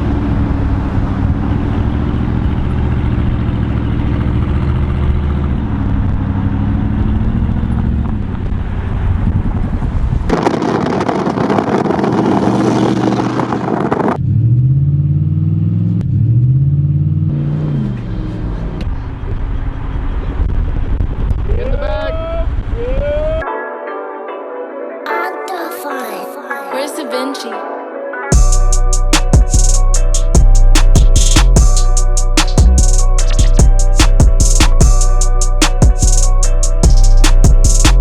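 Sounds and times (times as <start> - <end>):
car exhaust running and revving: 0.0 - 21.7, 28.3 - 38.0
loud steady rushing noise: 8.2 - 14.2, 28.3 - 38.0.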